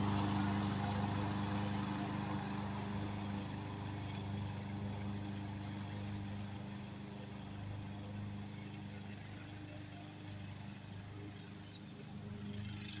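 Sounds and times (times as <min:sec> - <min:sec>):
lawnmower engine running: 0:00.0 - 0:08.9.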